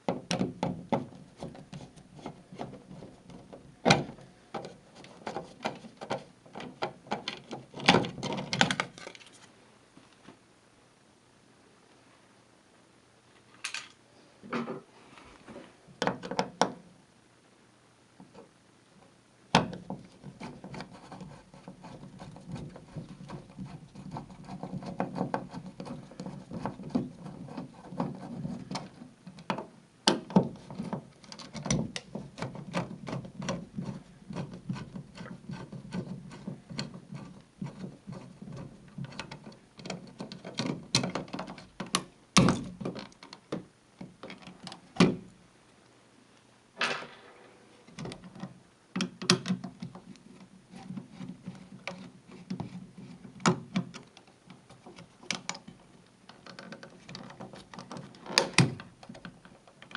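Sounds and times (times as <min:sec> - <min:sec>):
sharp knock: 0:46.8 - 0:47.6.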